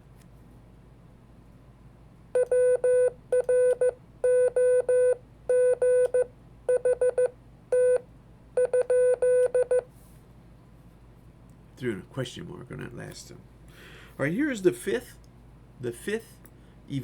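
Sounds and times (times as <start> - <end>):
morse code beeping: 8.6 - 9.8.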